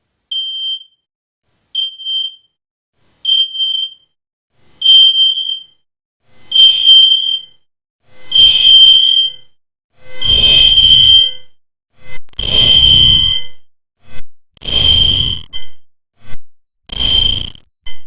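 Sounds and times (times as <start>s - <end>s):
smoke alarm beeping: 1.8s - 2.5s, 3.3s - 4.1s, 4.8s - 5.8s, 6.5s - 7.5s, 8.4s - 9.4s, 10.2s - 11.3s, 12.4s - 13.4s, 14.6s - 15.5s.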